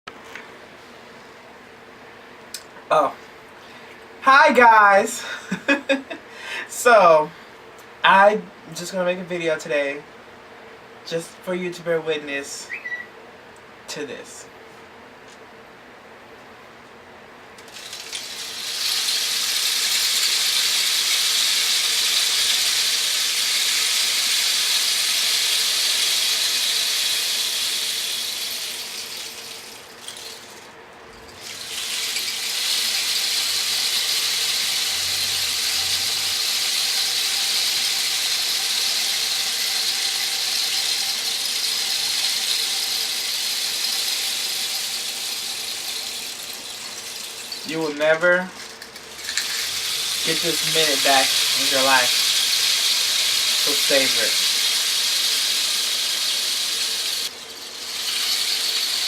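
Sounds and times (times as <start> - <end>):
rain stick pouring hiss: 17.6 - 59.0.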